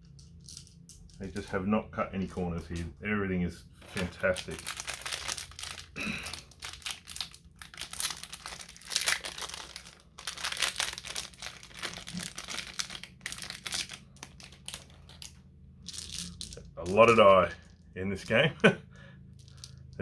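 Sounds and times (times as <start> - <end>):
plastic bags crinkling: 3.8 - 17.7.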